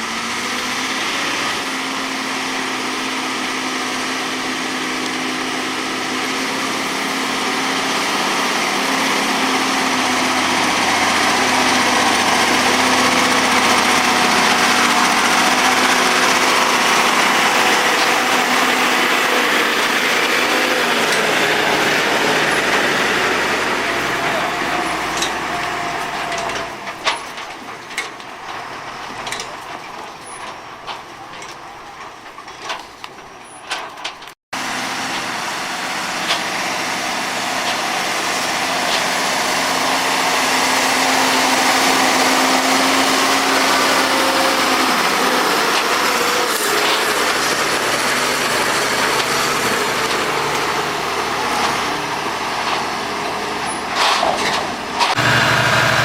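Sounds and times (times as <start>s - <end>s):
wood chipper running: 0.0s - 56.0s
sharp knocks and clatter: 23.8s - 34.4s.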